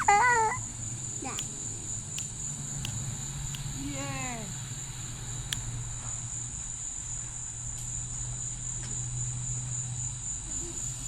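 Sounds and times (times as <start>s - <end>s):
cricket chorus chirring: 0.0s - 11.0s
click: 5.5s - 5.7s.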